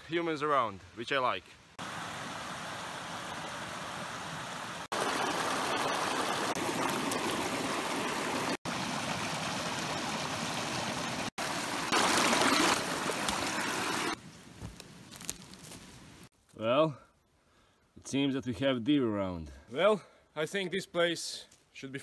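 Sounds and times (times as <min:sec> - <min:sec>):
creek water running: 0:00.2 - 0:15.8.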